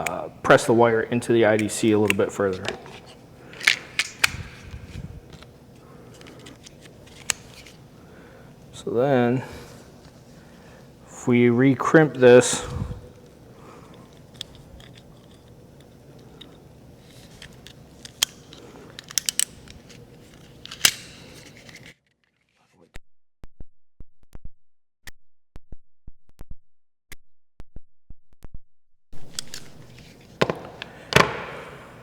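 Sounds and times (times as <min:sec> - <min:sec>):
room noise: 0:00.0 - 0:21.9, 0:29.2 - 0:32.0.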